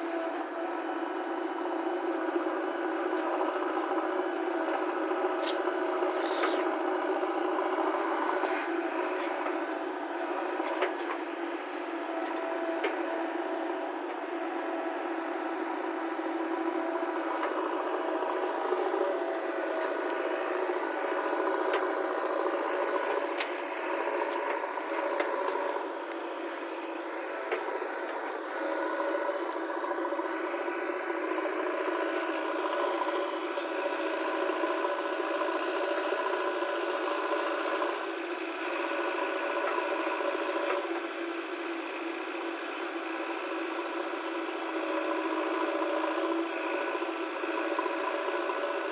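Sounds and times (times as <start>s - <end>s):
diesel engine running: 0.0s - 48.9s.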